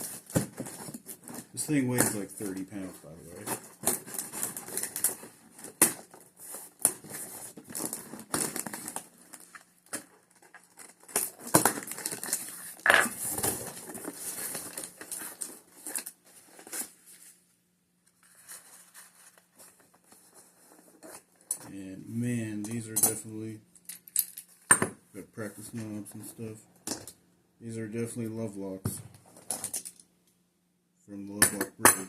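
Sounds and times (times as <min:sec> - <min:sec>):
packing material crinkling: 0:00.0 - 0:17.4
packing tape tearing: 0:03.4 - 0:17.0.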